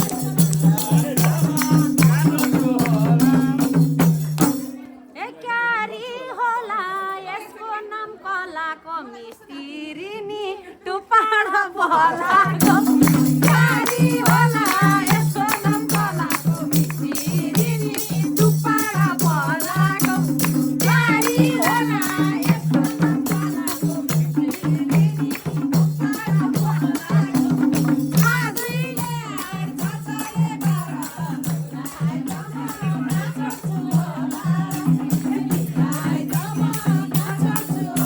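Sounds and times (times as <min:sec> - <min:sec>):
rattling percussion beat: 0:00.0 - 0:04.8, 0:12.5 - 0:38.0.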